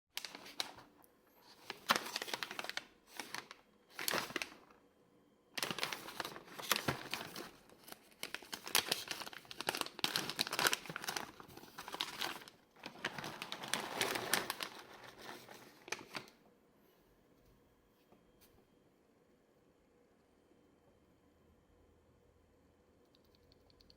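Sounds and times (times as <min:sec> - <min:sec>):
mechanical keyboard typing: 0:23.1 - 0:23.9.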